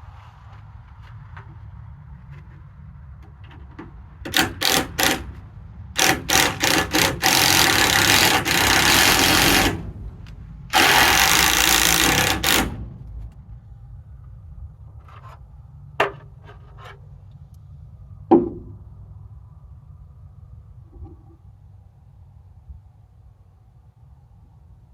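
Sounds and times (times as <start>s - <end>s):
handheld power tool running: 4.3s - 5.4s, 6.0s - 10.0s, 10.7s - 13.0s
low rumble: 7.8s - 16.4s.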